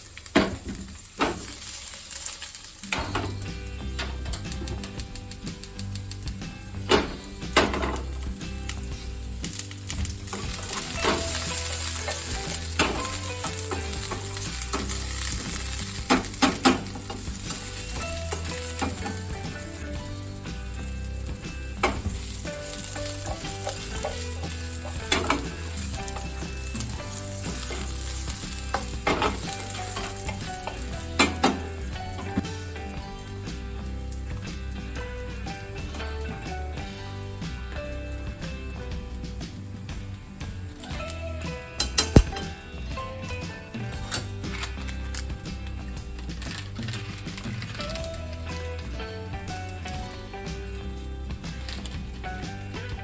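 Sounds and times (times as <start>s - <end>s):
food sizzling in a pan: 0.0s - 53.0s
metal utensil knocking pan: 21.8s - 32.6s, 41.8s - 42.6s.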